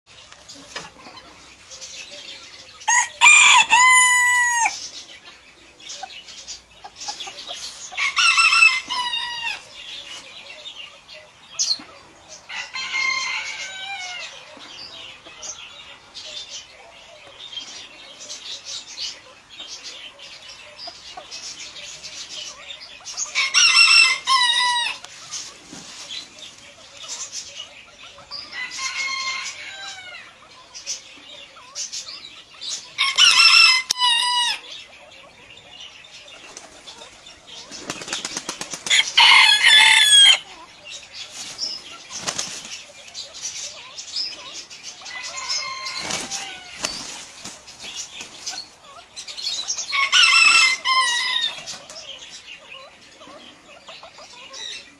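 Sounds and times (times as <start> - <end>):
rooster crowing: 2.9 - 4.8, 38.9 - 40.4
wings flapping and scuffling: 25.2 - 26.3, 36.4 - 39.4, 41.3 - 42.9, 45.8 - 48.7.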